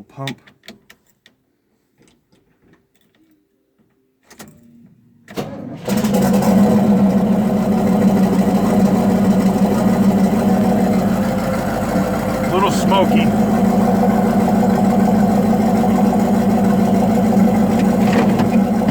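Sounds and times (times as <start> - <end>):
starter motor cranking: 5.8 - 18.9
car engine running loudly: 5.9 - 18.9.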